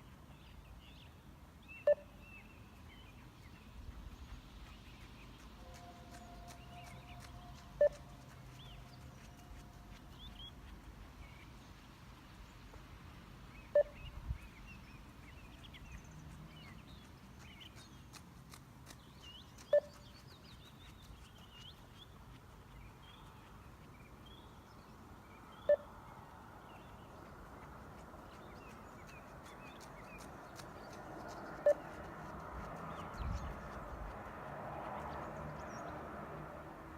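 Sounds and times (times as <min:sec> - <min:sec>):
short beeps: 0:01.9 - 0:02.1, 0:13.8 - 0:14.1.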